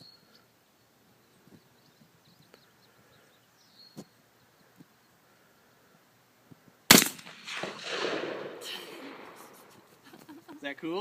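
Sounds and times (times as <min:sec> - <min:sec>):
rifle shot with echo: 0:06.9 - 0:10.0.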